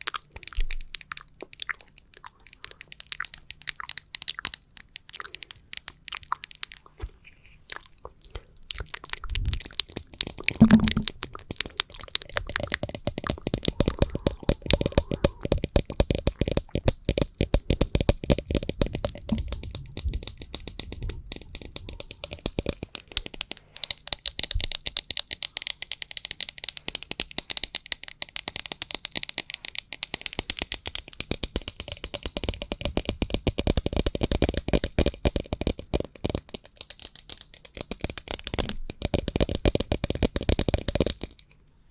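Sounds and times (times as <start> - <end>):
tapping on small fan: 12.5 - 41.4.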